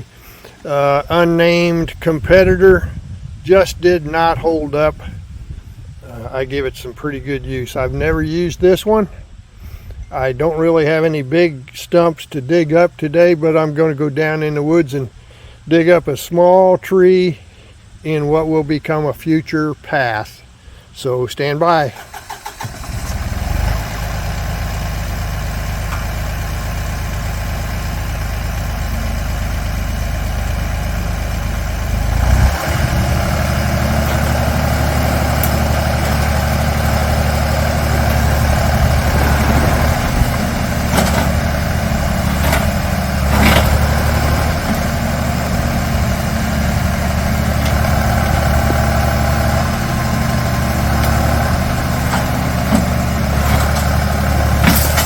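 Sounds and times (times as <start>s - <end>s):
loader engine running: 22.0s - 55.0s.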